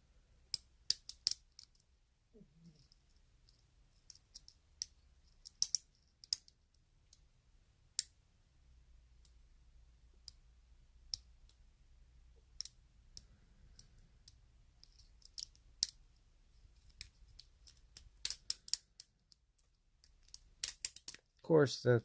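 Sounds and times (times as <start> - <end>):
lock pick clicking and scraping: 0.5 - 1.8, 2.6 - 6.6, 13.7 - 16.0, 16.9 - 21.3.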